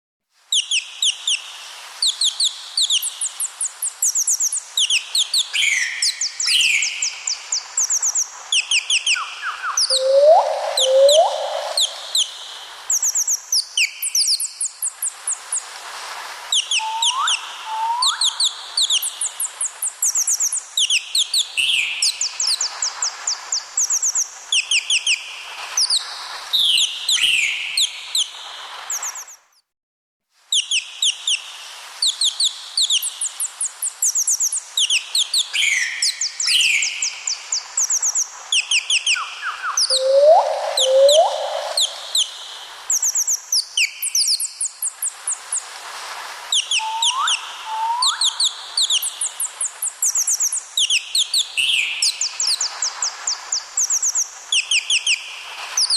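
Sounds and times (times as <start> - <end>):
birds chirping: 2.1 - 15.7, 16.6 - 25.2, 32.1 - 45.7, 46.6 - 55.2
rising bird whistles: 4.1 - 15.4, 16.5 - 19.4, 34.1 - 45.2, 46.5 - 52.7.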